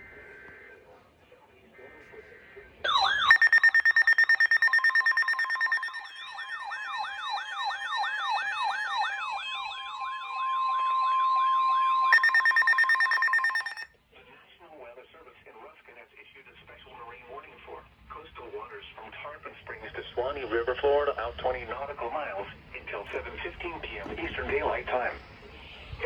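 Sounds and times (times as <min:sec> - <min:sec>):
sweeping siren wails: 0:02.9 - 0:13.8
rapid pulsing beep: 0:02.9 - 0:13.9
steady single alarm tone: 0:02.9 - 0:13.9
warbling high alarm tone: 0:02.9 - 0:13.9.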